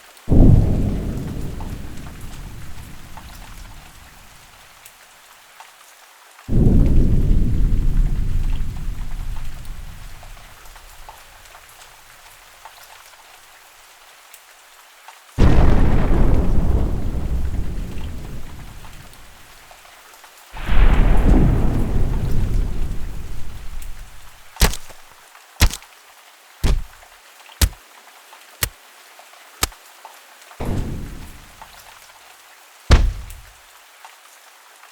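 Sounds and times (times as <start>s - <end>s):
faint rain ambience: 0.0s - 34.9s
short sharp hits: 24.5s - 25.8s, 26.6s - 27.0s, 32.9s - 33.5s.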